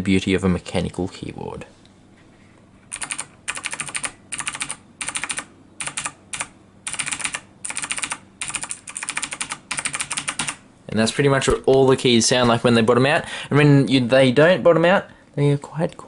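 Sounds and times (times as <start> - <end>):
mechanical keyboard typing: 2.9 - 10.6.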